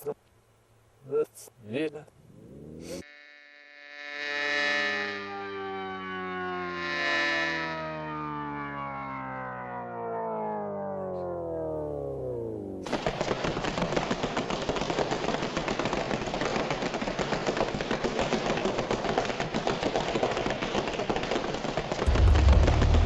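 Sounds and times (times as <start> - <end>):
dense rapid crackling: 12.9 - 23.0
deep rumble: 22.1 - 23.0
falling tone: 22.1 - 23.0.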